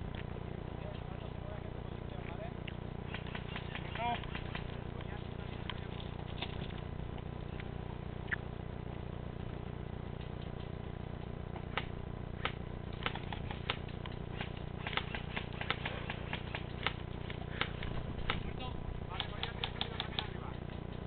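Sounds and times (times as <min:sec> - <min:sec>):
sharp irregular clicks: 0:02.6 - 0:07.7, 0:10.2 - 0:21.0.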